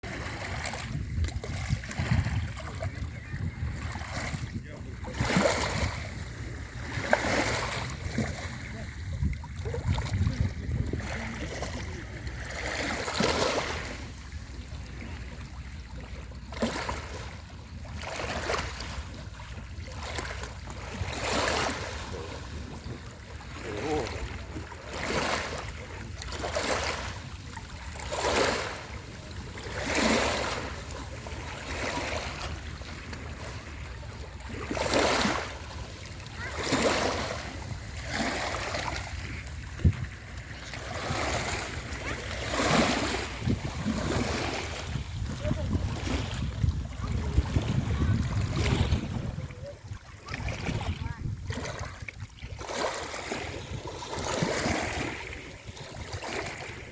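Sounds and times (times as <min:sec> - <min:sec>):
wind rumble on microphone: 0:00.0 - 0:12.5, 0:39.1 - 0:41.9, 0:42.7 - 0:56.9
small sea waves washing in: 0:00.0 - 0:56.9.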